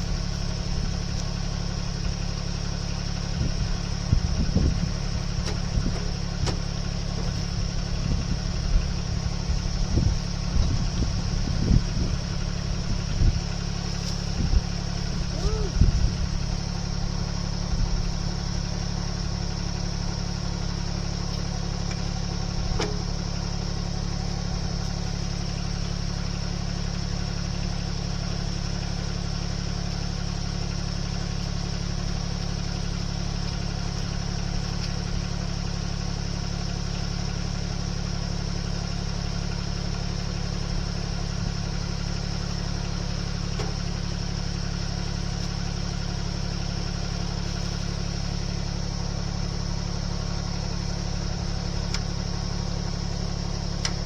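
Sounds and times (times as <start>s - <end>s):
machine engine droning: 0.0s - 54.0s
faint click: 51.9s - 52.1s, 53.8s - 54.0s.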